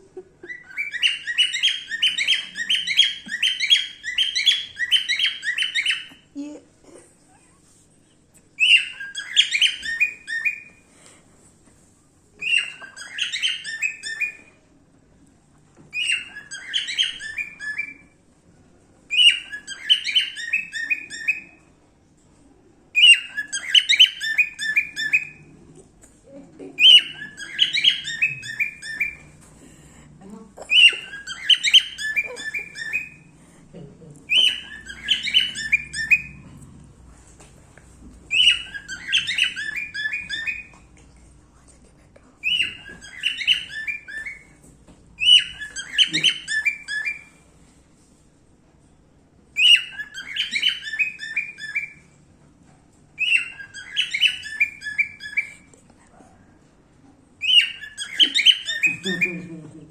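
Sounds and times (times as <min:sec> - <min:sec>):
cockatiel chirping: 0:00.4 - 0:06.2, 0:08.6 - 0:10.8, 0:12.4 - 0:14.6, 0:15.9 - 0:18.2, 0:19.1 - 0:21.6, 0:23.0 - 0:25.5, 0:26.8 - 0:29.3, 0:30.7 - 0:33.3, 0:34.3 - 0:36.4, 0:38.3 - 0:40.8, 0:42.4 - 0:44.6, 0:45.2 - 0:47.4, 0:49.5 - 0:52.0, 0:53.2 - 0:55.7, 0:57.4 - 0:59.3.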